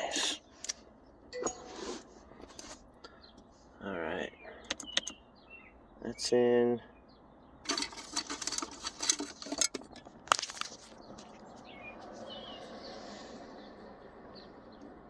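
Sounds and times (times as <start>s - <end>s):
plastic parts clicking and rattling: 7.6s - 11.3s.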